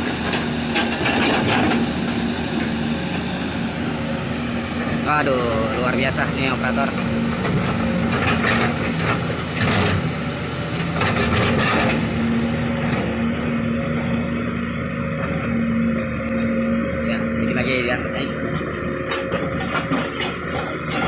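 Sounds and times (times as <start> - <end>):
excavator diesel engine humming: 0.0 - 21.0
machine clanks and rattles: 0.2 - 2.0, 6.0 - 10.1, 10.7 - 12.1, 18.6 - 21.0.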